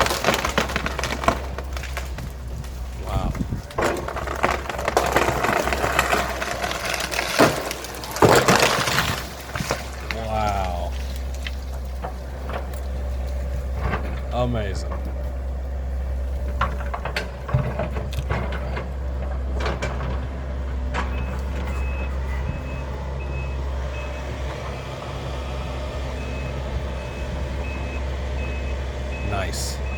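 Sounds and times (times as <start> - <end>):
sharp knocks and cracks: 0.0 - 15.4, 16.3 - 21.7
excavator engine running: 0.0 - 29.9.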